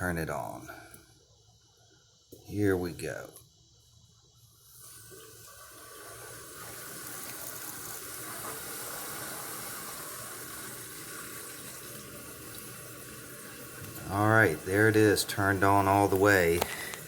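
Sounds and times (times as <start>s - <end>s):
water rushing into toilet tank: 4.7s - 17.0s.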